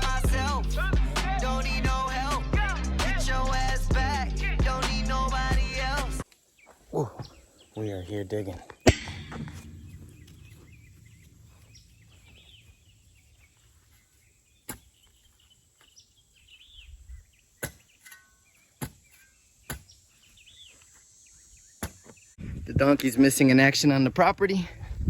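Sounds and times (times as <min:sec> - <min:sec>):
small birds chirping faintly: 0:06.2 - 0:22.4
shovel striking dirt: 0:08.9 - 0:12.6, 0:14.6 - 0:15.0, 0:17.6 - 0:20.0, 0:21.8 - 0:22.1.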